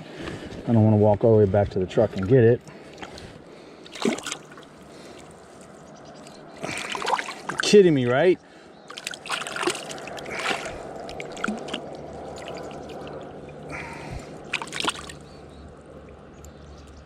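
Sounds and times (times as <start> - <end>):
river water running: 2.0 - 17.0.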